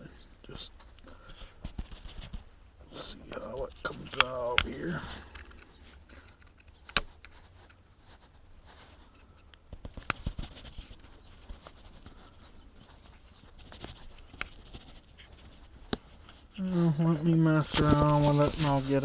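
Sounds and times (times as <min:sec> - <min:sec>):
plastic scraping: 0:17.0 - 0:19.0.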